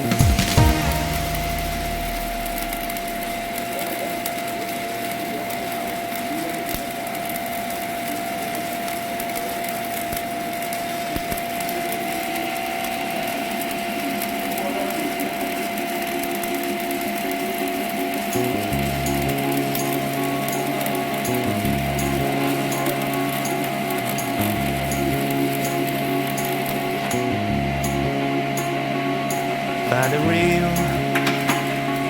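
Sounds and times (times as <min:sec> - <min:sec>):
high hum: 0:00.0 - 0:03.9, 0:16.6 - 0:32.0.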